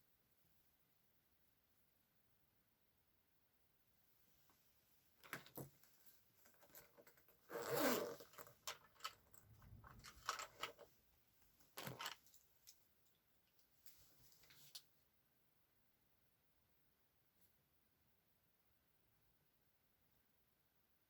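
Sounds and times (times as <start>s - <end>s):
zipper being pulled: 7.4s - 10.8s
objects clicking and rustling: 8.2s - 11.0s, 11.7s - 12.8s.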